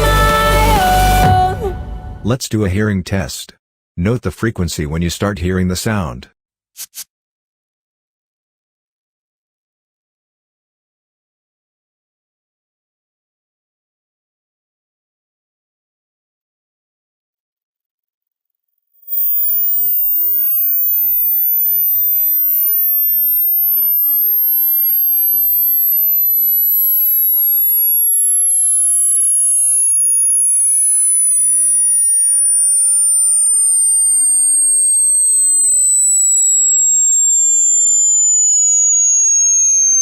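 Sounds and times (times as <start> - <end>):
sine tone sweeping downward: 19.0 - 40.0.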